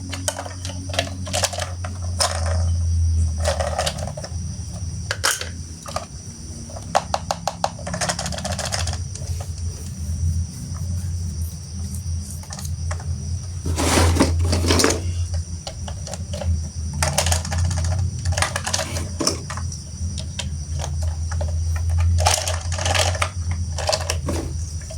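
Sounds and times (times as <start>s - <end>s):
steady low hum: 0.0s - 24.9s
plastic toy pieces clattering: 0.1s - 4.4s, 5.1s - 6.1s, 6.8s - 9.4s, 13.6s - 24.9s.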